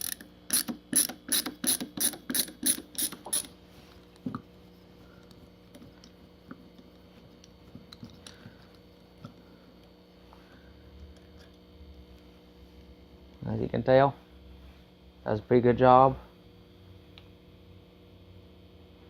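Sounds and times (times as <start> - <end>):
ratchet screwdriver clicking: 0.0 - 3.5.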